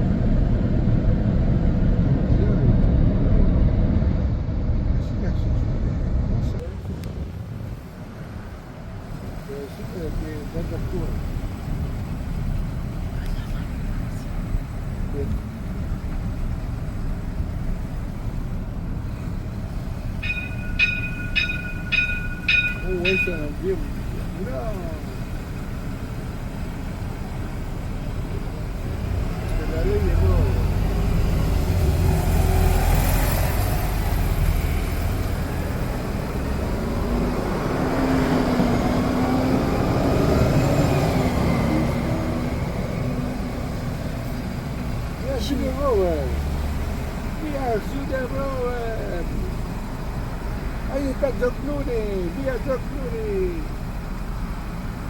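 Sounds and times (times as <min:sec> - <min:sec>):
heavy machinery rumbling: 0:00.0 - 0:55.0
wavering engine hum: 0:00.0 - 0:55.0
high-pitched tone: 0:20.2 - 0:23.6.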